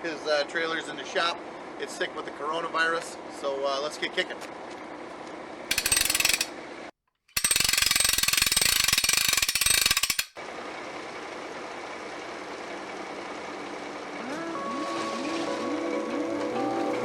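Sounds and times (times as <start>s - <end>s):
rapid mechanical clicking: 5.7s - 6.5s, 7.3s - 10.4s.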